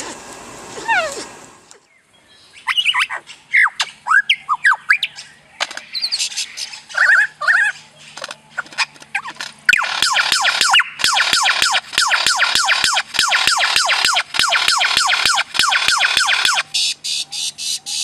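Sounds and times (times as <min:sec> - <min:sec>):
bird chirping and whistling: 0:02.5 - 0:07.8, 0:09.1 - 0:18.0.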